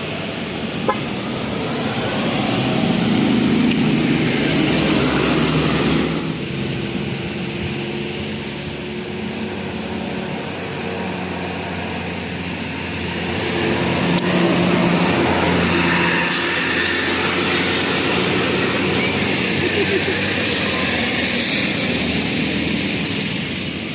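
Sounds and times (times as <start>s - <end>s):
road traffic engines rushing: 0.0s - 23.9s.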